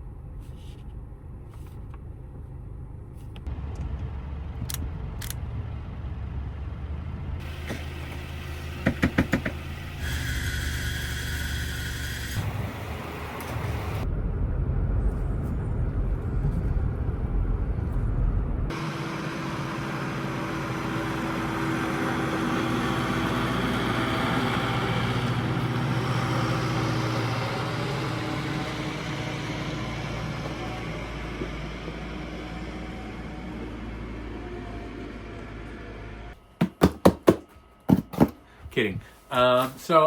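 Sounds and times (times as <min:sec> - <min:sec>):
heavy low rumble: 0:00.0 - 0:08.8, 0:12.4 - 0:19.0
car road and engine noise: 0:00.0 - 0:36.4.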